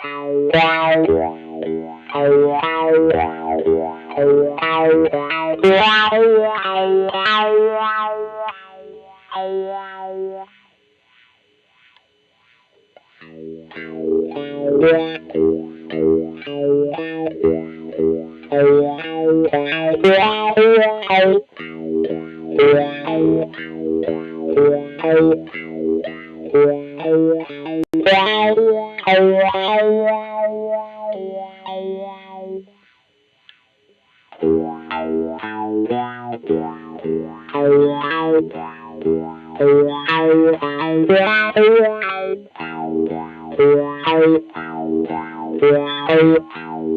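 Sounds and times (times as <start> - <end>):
electric guitar playing: 0.0 - 46.9.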